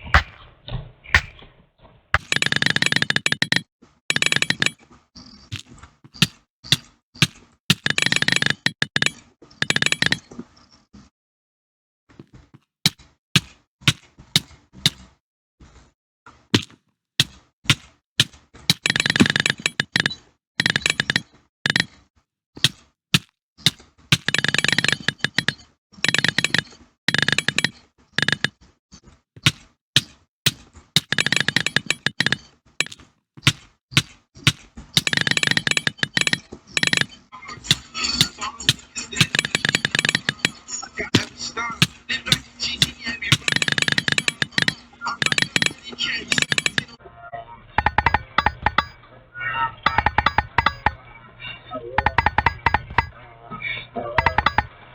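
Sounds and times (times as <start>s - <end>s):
sharp clicks: 2.2s - 4.8s, 6.1s - 10.3s, 16.6s - 22.0s, 22.6s - 28.5s, 29.4s - 40.6s, 41.2s - 47.0s, 47.8s - 49.0s, 49.8s - 51.0s, 52.0s - 53.1s, 54.2s - 54.7s.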